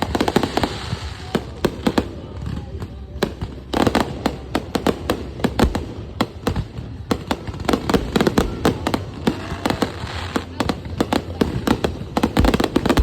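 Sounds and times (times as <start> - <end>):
fireworks bangs and cracks: 0.0 - 13.0
fireworks crackling: 0.0 - 13.0.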